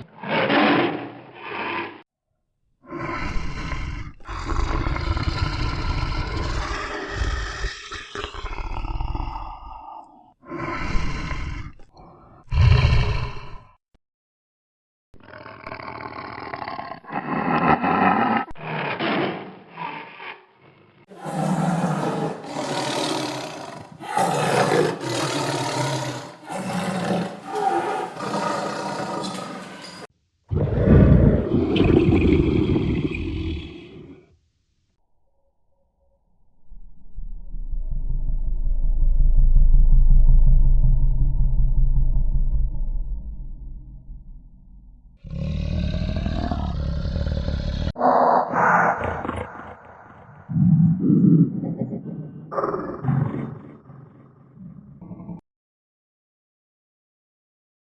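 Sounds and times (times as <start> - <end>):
tiger roaring and growling: 0.0 - 2.1, 2.8 - 13.8, 15.2 - 34.3, 45.1 - 55.4.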